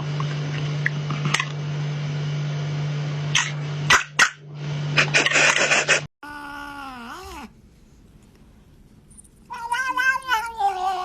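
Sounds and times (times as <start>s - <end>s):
machine hum: 0.0s - 6.1s
cat yowling: 6.2s - 7.6s, 9.5s - 11.0s.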